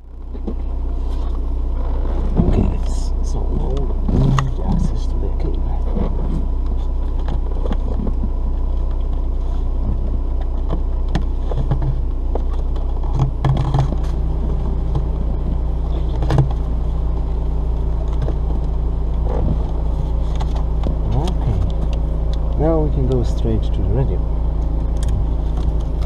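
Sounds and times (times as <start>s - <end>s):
low rumble: 0.0s - 26.0s.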